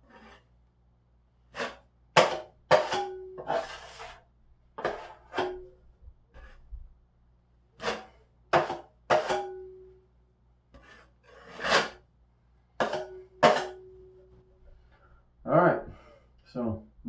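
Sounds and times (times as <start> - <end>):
drywall knife scraping compound: 0.0 - 0.6, 1.5 - 5.6, 6.3 - 6.8, 7.7 - 9.6, 10.7 - 12.1, 12.8 - 13.8.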